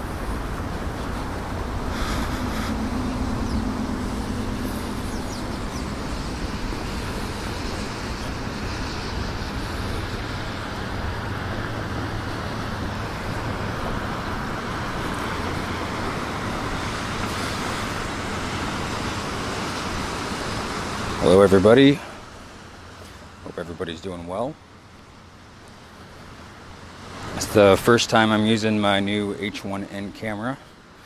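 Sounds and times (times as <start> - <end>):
low rumble on microphone: 0.0 - 11.5
light rain hissing: 0.0 - 31.0.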